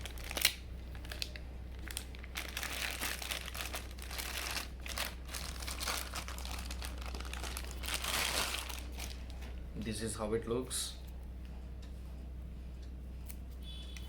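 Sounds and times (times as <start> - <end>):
packaging crinkling and rustling: 0.0 - 9.6.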